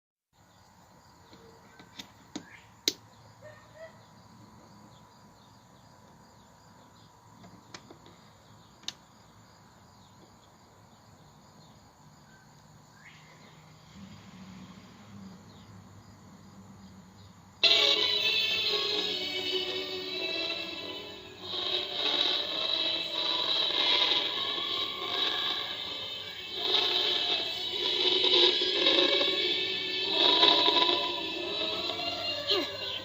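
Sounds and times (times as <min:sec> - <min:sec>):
record hiss: 0:00.4 - 0:33.0
steady hum: 0:12.3 - 0:33.0.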